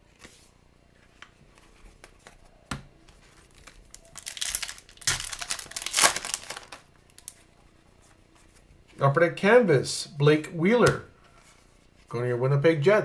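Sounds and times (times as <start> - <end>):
foil wrapper tearing and crinkling: 3.3 - 7.4.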